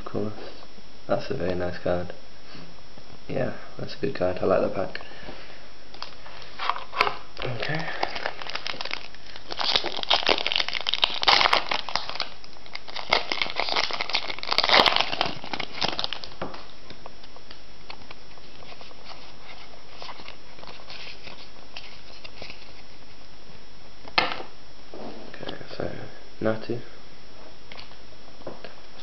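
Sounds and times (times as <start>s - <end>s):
foil wrapper crinkling and tearing: 6.0s - 23.0s.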